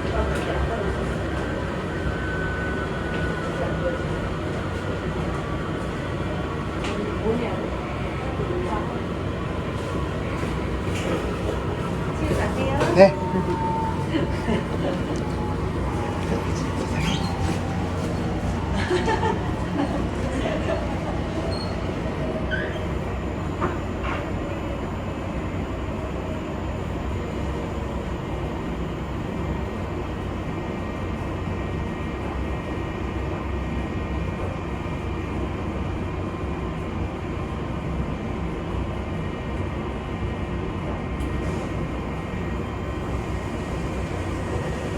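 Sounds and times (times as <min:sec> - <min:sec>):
washing machine rumble: 0:06.4 - 0:23.0.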